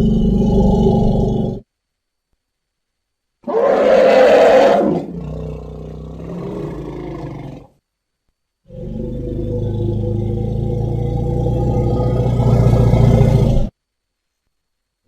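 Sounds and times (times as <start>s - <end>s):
elephant roaring call: 0.0s - 1.6s, 3.4s - 7.7s, 8.7s - 13.7s.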